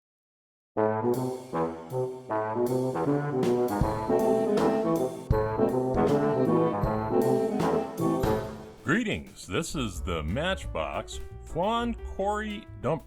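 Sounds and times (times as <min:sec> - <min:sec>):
brass instrumental music: 0:00.8 - 0:13.0.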